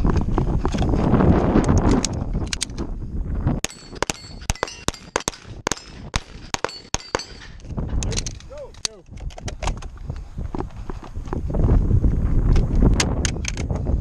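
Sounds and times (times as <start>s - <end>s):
pistol shots: 3.6s - 7.5s
steel plates ringing: 3.6s - 7.6s.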